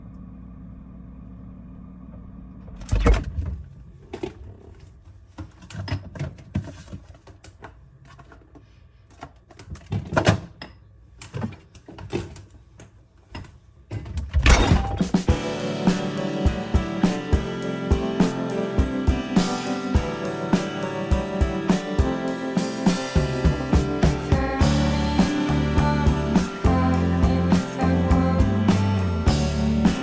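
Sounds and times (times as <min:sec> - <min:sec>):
steady low hum: 0:15.3 - 0:30.0.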